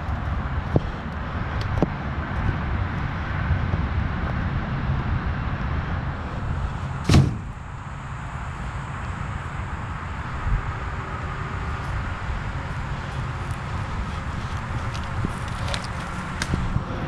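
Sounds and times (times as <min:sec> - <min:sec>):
sharp bang: 0:07.0 - 0:07.6.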